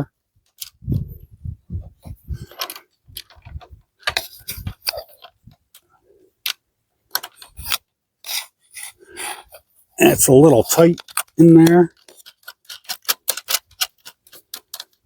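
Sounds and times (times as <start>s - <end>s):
small clicks and taps: 11.0s - 15.0s.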